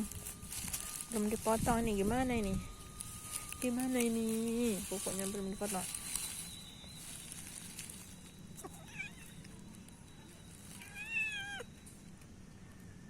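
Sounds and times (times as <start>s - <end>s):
cat meowing: 8.6s - 9.4s, 10.8s - 11.7s.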